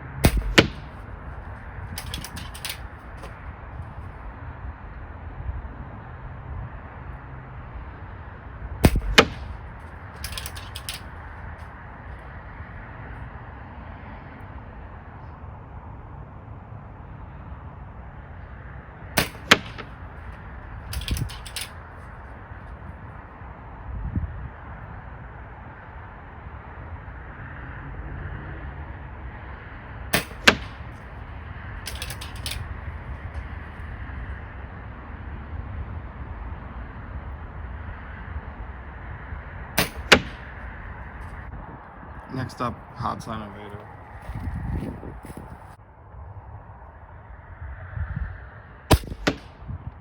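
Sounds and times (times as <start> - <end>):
dull thump: 0.2 - 1.1, 8.8 - 9.6
air rifle cracks: 0.2 - 1.2, 1.9 - 3.4, 8.8 - 9.6, 10.2 - 11.1, 19.2 - 20.2, 20.9 - 21.8, 30.2 - 31.0, 31.9 - 32.8, 39.8 - 40.6, 48.9 - 49.5
quick run of clicks: 1.9 - 3.4.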